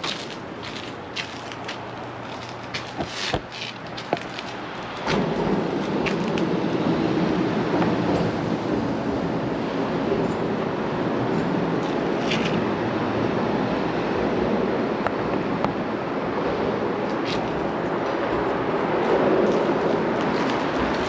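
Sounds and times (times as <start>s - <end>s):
city traffic rumble: 0.0s - 21.0s.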